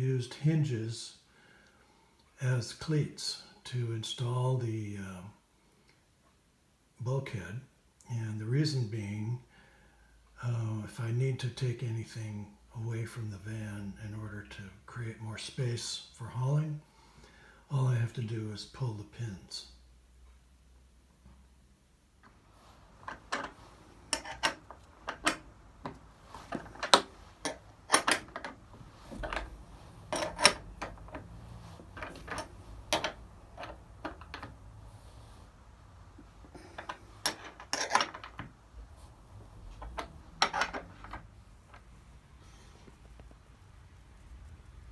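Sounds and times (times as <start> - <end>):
metallic clinks and knocks: 23.0 - 34.6, 36.5 - 38.5, 39.8 - 41.8.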